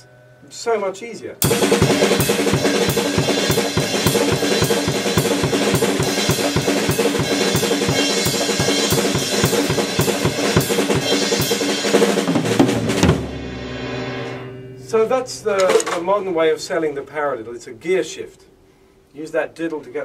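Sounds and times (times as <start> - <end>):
steady bass drum kick: 1.4 - 14.4
fast drum kit playing: 1.4 - 16.7.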